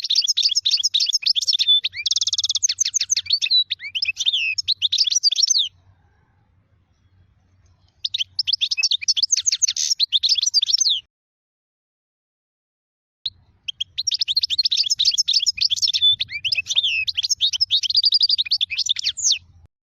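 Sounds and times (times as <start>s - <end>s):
finch singing twittering phrases: 0.0s - 5.8s, 7.6s - 11.1s, 13.3s - 19.6s.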